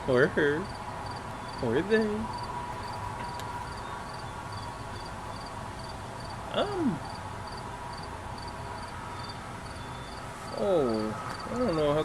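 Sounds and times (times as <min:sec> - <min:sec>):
insects chirping: 0:00.1 - 0:12.0
voice-like sound: 0:06.5 - 0:07.1.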